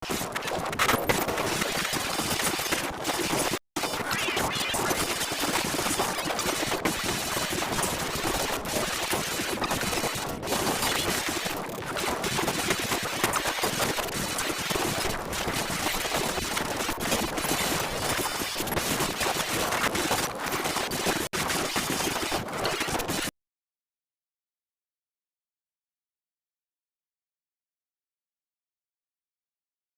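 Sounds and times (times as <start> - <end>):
harsh distorted crackling: 0.0 - 23.3.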